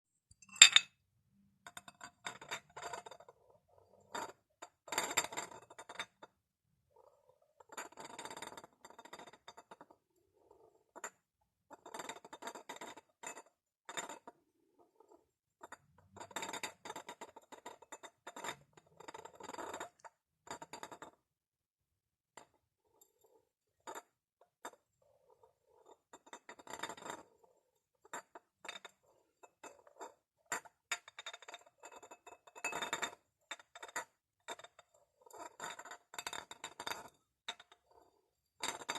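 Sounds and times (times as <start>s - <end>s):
glass bottles clinking: 0.4s - 0.9s.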